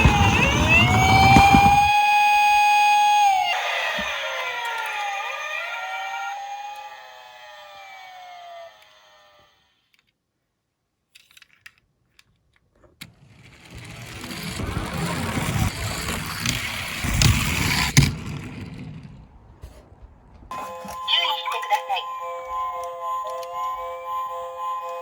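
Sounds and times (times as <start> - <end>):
toy car wheels rolling: 0.0 - 2.0, 3.5 - 10.2, 11.2 - 19.3
toy police siren wailing: 0.0 - 9.9, 20.5 - 25.0.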